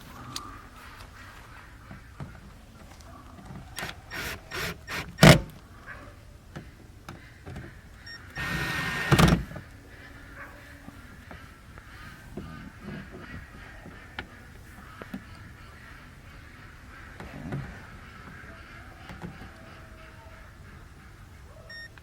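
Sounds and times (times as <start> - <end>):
cordless drill whirring: 3.8 - 5.6, 8.3 - 9.6.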